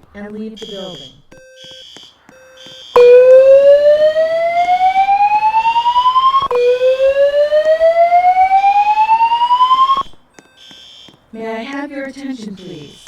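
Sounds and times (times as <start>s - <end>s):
rising whoop evacuation tone: 3.0s - 10.1s.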